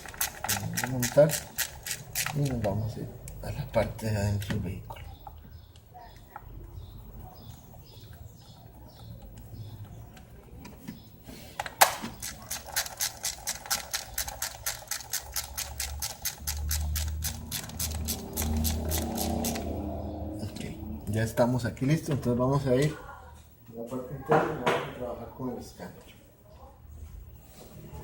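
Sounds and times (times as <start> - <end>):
ratchet wrench clicking: 12.2 - 19.7.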